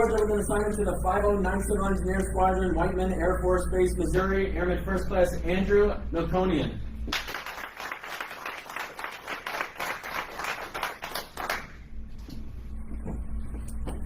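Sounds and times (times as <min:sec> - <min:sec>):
audience applauding: 0:07.1 - 0:11.8.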